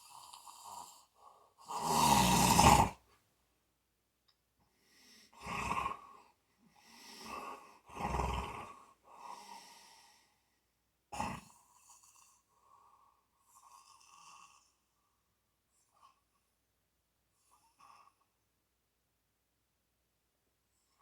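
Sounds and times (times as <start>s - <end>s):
person snoring: 1.7s - 3.0s, 7.2s - 8.8s.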